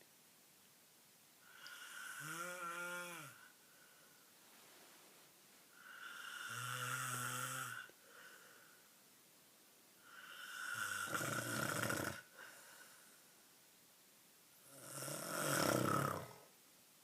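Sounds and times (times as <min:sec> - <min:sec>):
person snoring: 0:01.4 - 0:03.5, 0:05.8 - 0:07.9, 0:10.0 - 0:12.4, 0:14.7 - 0:16.5.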